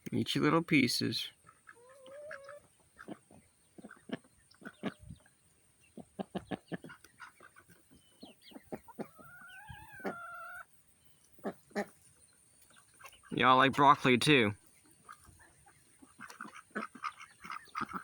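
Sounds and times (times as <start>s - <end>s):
chickens clucking: 0.1s - 18.0s
chicken drawn-out call: 1.4s - 5.1s, 8.5s - 10.7s.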